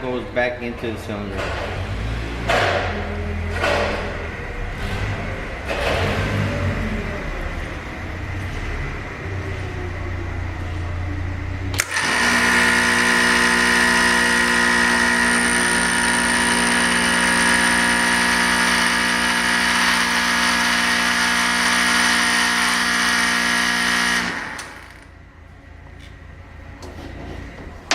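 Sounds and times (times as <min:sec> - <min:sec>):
high machine whine: 0:01.1 - 0:26.8
electric pump motor running: 0:11.7 - 0:25.3.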